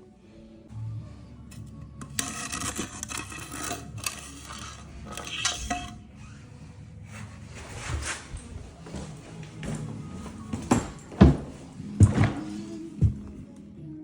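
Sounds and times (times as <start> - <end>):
scraping and rubbing: 1.5 - 8.6.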